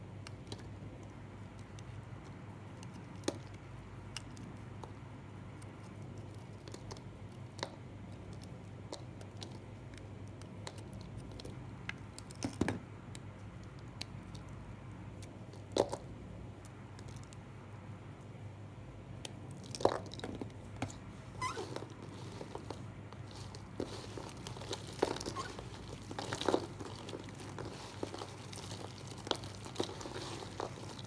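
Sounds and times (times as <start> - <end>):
knife cutting dry soap: 20.8 - 31.0.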